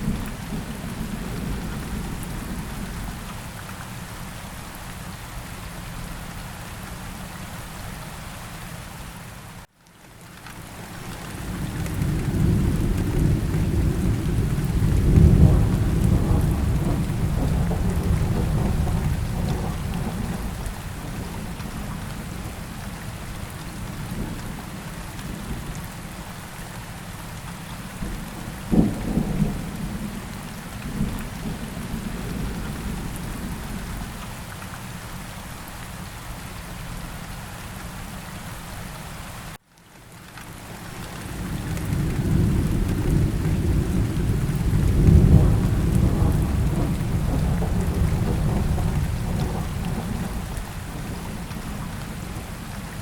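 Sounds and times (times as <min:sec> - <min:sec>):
steady rain: 0:00.0 - 0:53.0
rolling thunder rumble: 0:11.5 - 0:25.8, 0:28.0 - 0:34.2, 0:41.2 - 0:53.0
sharp thunderclap: 0:12.4 - 0:20.7, 0:41.8 - 0:51.8.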